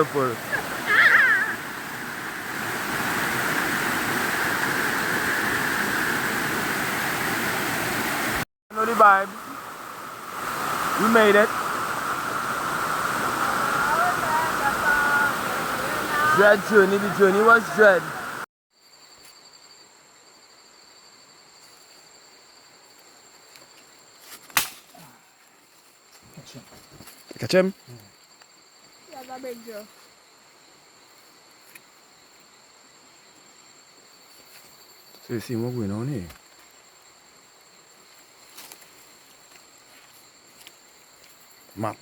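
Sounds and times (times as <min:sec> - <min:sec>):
insect chirring: 0:00.0 - 0:06.2, 0:08.7 - 0:42.0
light hiss: 0:00.0 - 0:18.4
waterfall rushing: 0:00.0 - 0:18.5.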